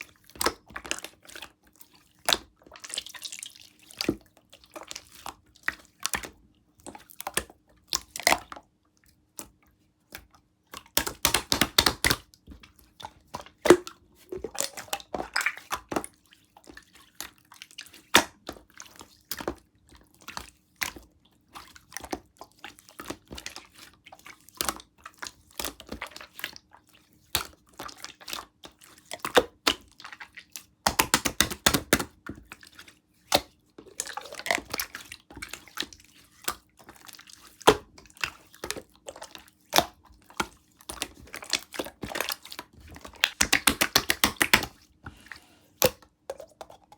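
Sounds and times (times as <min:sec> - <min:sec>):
hands squishing slime: 0:10.1 - 0:21.0, 0:27.2 - 0:46.9
rapid clicking of slime: 0:10.2 - 0:12.3, 0:30.8 - 0:32.6, 0:37.6 - 0:44.8.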